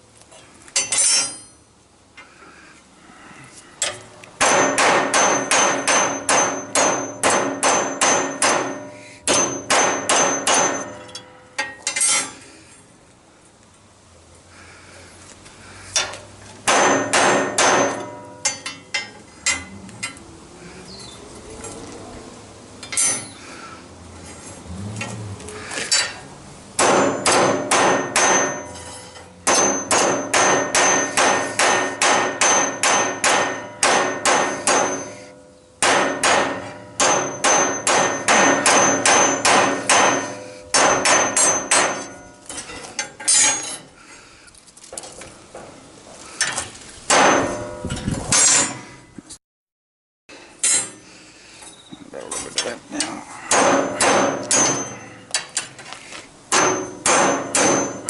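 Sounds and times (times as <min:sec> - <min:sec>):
hammer striking metal: 0:03.8 - 0:12.3, 0:16.0 - 0:20.2, 0:26.8 - 0:43.8, 0:47.1 - 0:48.8, 0:53.5 - 0:55.7, 0:56.5 - 0:58.0.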